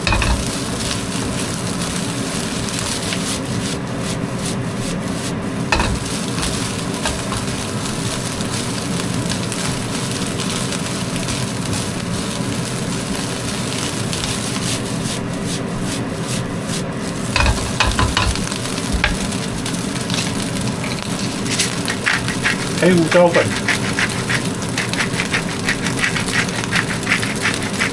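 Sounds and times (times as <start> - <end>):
spatula clacking against pan: 0.0 - 0.9, 5.8 - 7.6, 17.4 - 19.4, 20.1 - 22.8, 23.5 - 27.9
spatula scraping: 0.0 - 10.5, 13.7 - 27.9
rice sizzling in a hot pan: 0.0 - 27.9.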